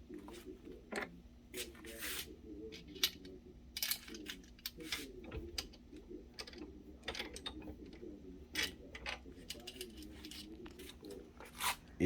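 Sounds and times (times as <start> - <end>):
hand tools clicking and clattering: 8.6 - 11.1.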